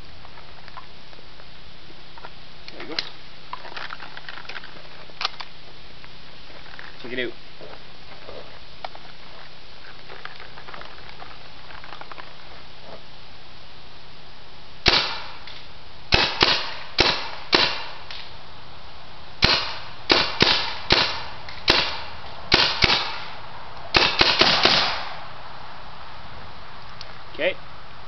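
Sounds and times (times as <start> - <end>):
paintball gun firing: 14.8 - 18.3, 19.4 - 25.2.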